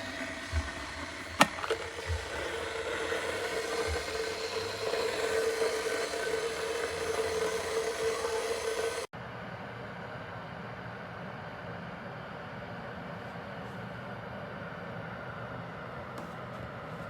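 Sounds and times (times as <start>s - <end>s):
electric kettle hissing: 0.0s - 9.1s.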